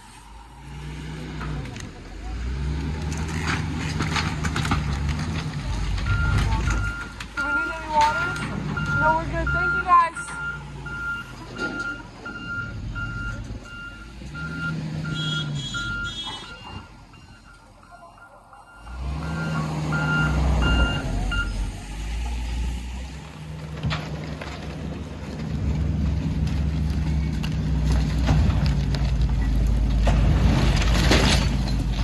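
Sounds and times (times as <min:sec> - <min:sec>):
engine running and revving: 0:00.0 - 0:07.1, 0:10.4 - 0:16.8, 0:18.7 - 0:32.0
backup alarm beeping: 0:06.0 - 0:21.6.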